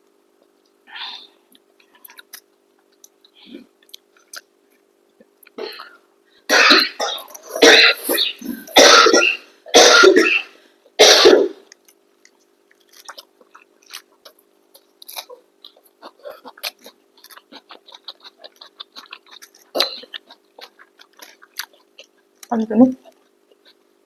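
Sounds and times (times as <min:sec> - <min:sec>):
chewing food clicks and smacks: 0:01.5 - 0:05.6, 0:11.7 - 0:23.8
person coughing hard: 0:05.6 - 0:11.6, 0:19.7 - 0:20.2.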